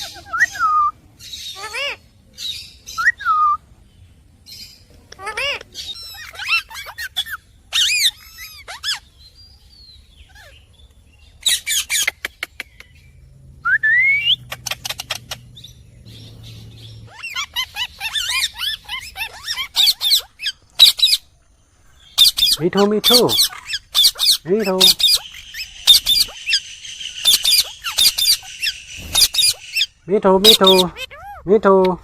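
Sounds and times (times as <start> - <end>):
parrot chirping and squawking: 0.0 - 3.3, 4.5 - 9.2, 11.4 - 13.0, 14.2 - 31.5
parrot rising whistle: 13.6 - 15.3.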